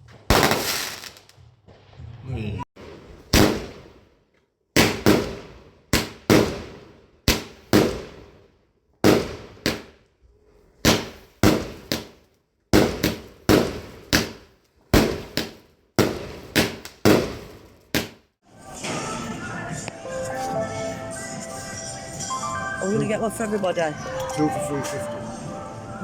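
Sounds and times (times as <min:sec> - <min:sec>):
fireworks banging: 0:00.0 - 0:02.2, 0:02.8 - 0:04.1, 0:04.7 - 0:10.2, 0:10.8 - 0:20.6.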